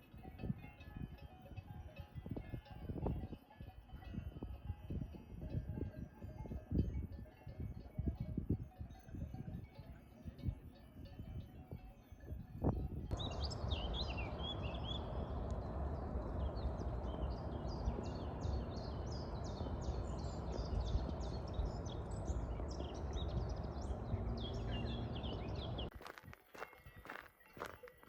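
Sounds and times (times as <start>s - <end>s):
small birds chirping: 13.1s - 25.9s
steady rushing noise: 13.1s - 25.9s.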